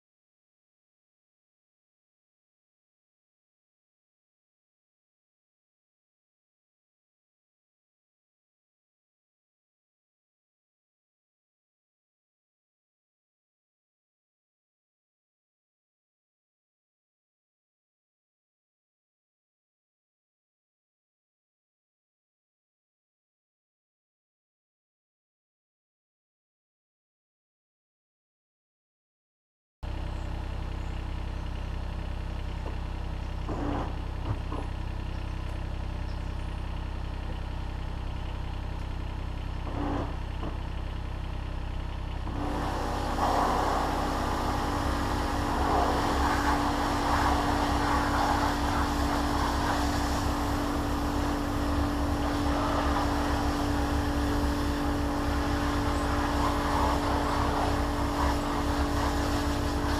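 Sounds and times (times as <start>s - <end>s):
machine running: 42.2s - 59.9s
hiss of spray: 42.4s - 51.2s.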